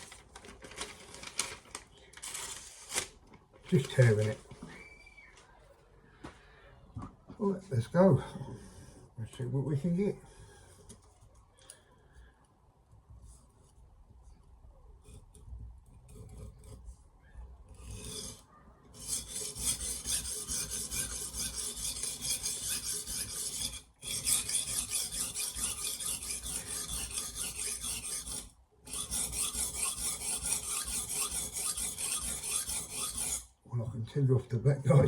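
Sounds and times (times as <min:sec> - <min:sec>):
faint handling sounds: 0:00.0 - 0:07.4, 0:08.4 - 0:17.0.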